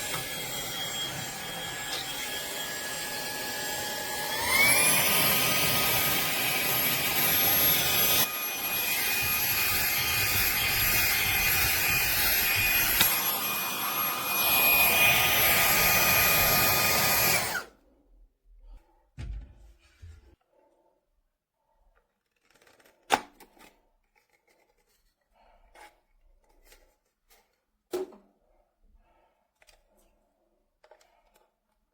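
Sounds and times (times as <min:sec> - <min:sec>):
handheld vacuum running: 0:00.0 - 0:17.8.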